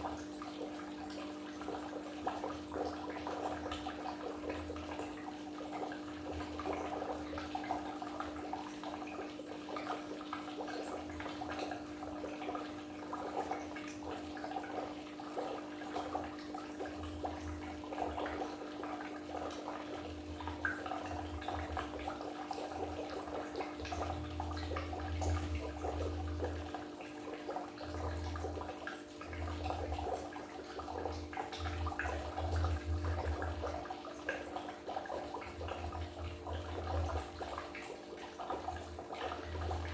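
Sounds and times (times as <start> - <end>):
aquarium water bubbling: 0.0 - 39.9
deep gurgles: 1.8 - 39.9.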